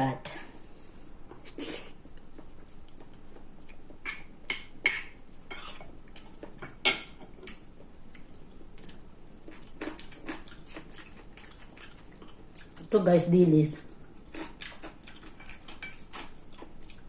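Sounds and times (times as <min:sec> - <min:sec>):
chewing: 0:02.2 - 0:13.0, 0:13.7 - 0:17.0
cutlery clinking on a plate: 0:06.6 - 0:07.2.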